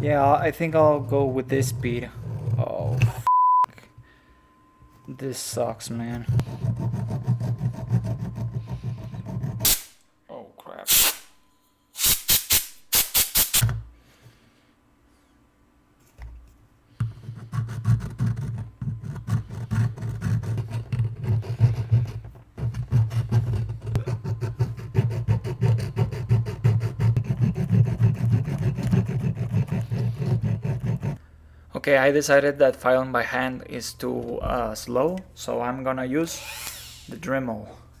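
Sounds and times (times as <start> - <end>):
hand file rasping on metal: 0.0 - 3.3, 6.1 - 10.0, 17.2 - 31.2, 36.3 - 37.2.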